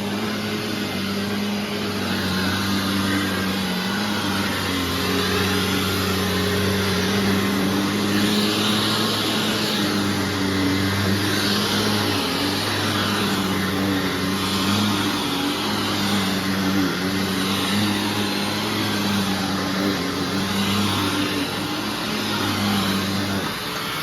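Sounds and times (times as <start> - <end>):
upright vacuum running on carpet: 0.0 - 24.0.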